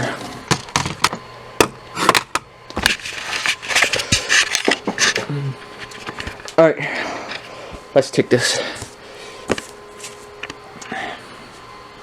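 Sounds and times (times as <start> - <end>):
rustling: 8.6 - 10.6.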